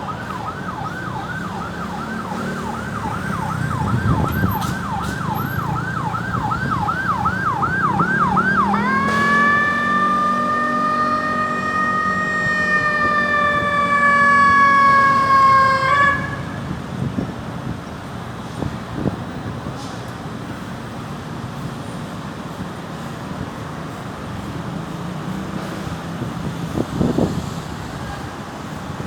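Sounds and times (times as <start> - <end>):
ambulance siren: 0.0 - 17.1
vehicle engine and road noise: 0.0 - 29.0.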